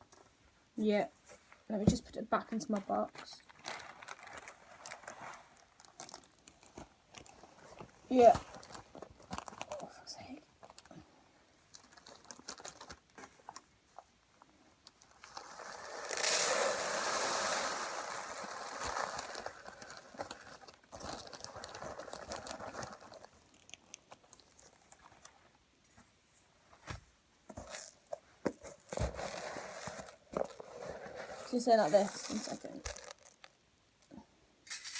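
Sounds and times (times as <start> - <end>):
hand-made rain patter: 15.4 - 20.5.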